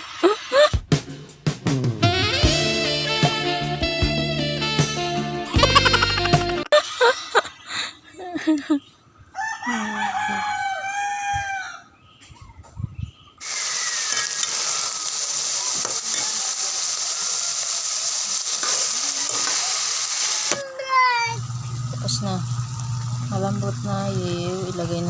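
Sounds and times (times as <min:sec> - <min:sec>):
rooster crowing: 0:09.3 - 0:12.0
steady hiss: 0:13.4 - 0:20.6.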